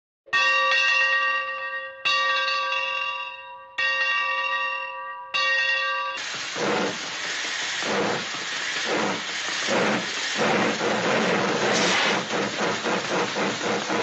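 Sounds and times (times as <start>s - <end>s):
loud hiss: 6.2s - 14.0s.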